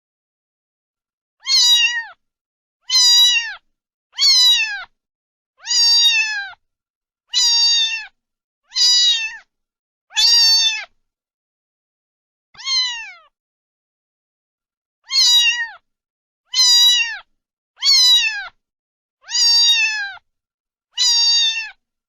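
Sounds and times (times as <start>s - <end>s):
cat meowing: 1.4s - 2.2s, 2.8s - 5.0s, 5.6s - 6.6s, 7.3s - 9.5s, 10.1s - 11.0s, 12.6s - 13.4s, 15.0s - 15.8s, 16.5s - 18.6s, 19.2s - 20.2s, 21.0s - 21.8s.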